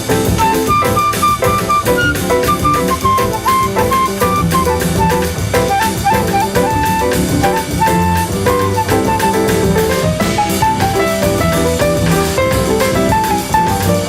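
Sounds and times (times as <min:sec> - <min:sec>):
bass line: 0:00.0 - 0:14.0
drum kit: 0:00.0 - 0:14.0
horns playing melody: 0:00.3 - 0:10.6.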